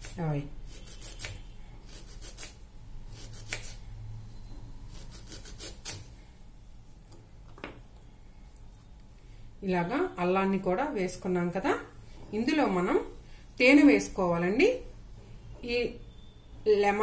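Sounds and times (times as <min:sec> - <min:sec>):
ginger slices scraping in bowl: 0:00.1 - 0:03.8, 0:04.9 - 0:06.1.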